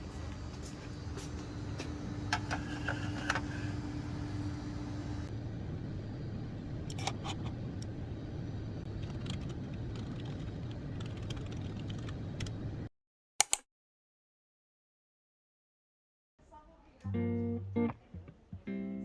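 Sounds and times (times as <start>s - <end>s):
sharp clicks: 13.4s - 13.6s.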